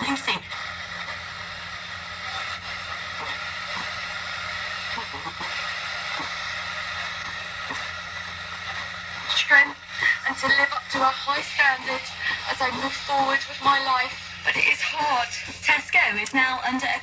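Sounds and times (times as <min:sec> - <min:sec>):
low mains hum: 0:00.0 - 0:17.0
radio static hiss: 0:00.0 - 0:17.0.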